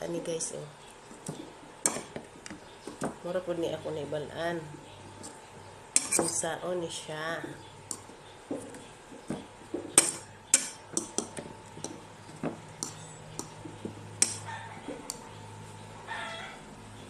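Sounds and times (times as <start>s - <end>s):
utensils clinking against dishes: 6.0s - 6.5s, 10.0s - 12.0s, 12.8s - 15.2s.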